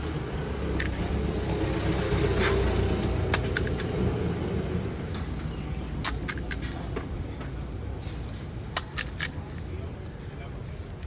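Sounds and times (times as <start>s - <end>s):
vehicle passing: 0.0s - 6.9s
street traffic rumbling: 0.0s - 11.0s
sharp clicks: 2.6s - 4.0s, 5.3s - 6.8s.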